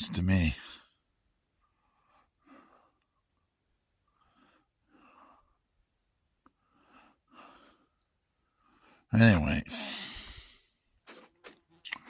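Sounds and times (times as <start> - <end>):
crickets trilling: 0.0 - 12.0
soft puffs of breath: 1.7 - 3.1, 4.0 - 5.7, 6.6 - 9.1, 9.7 - 11.2.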